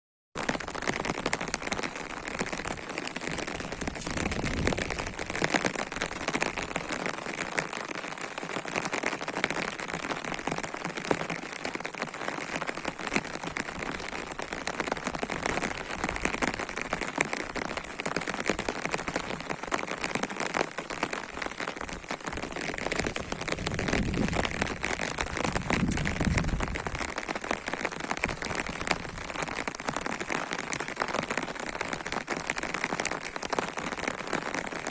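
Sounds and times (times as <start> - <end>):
heavy rain falling: 0.4 - 34.9.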